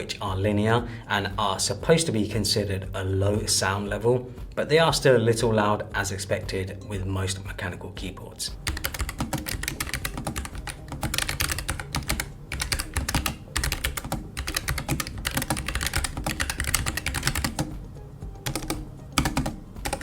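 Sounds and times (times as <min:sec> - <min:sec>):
fast typing on mechanical keyboard: 0:08.6 - 0:17.8, 0:18.4 - 0:20.0.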